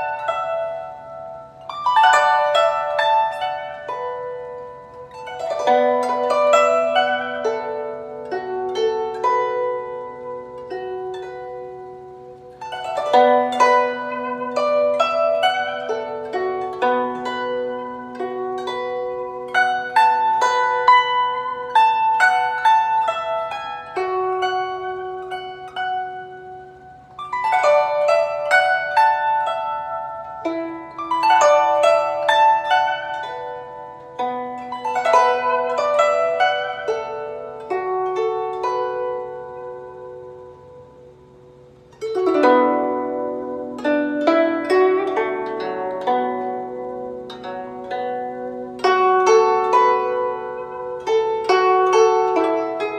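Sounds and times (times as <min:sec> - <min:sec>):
plucked string instrument music: 0:00.0 - 0:52.9.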